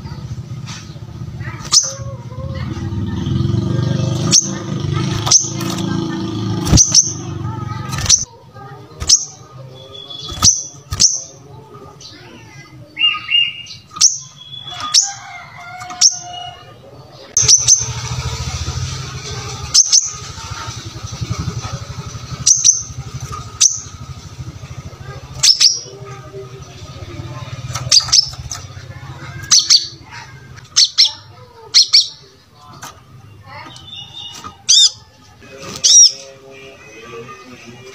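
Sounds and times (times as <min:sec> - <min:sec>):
bird chirping high and sharp: 0:01.6 - 0:02.1, 0:04.1 - 0:05.8, 0:06.5 - 0:08.3, 0:09.0 - 0:11.4, 0:13.0 - 0:15.2, 0:17.4 - 0:18.2, 0:19.6 - 0:20.2, 0:22.3 - 0:24.0, 0:25.4 - 0:25.9, 0:27.7 - 0:28.6, 0:29.4 - 0:30.0, 0:30.7 - 0:32.3, 0:33.7 - 0:35.1.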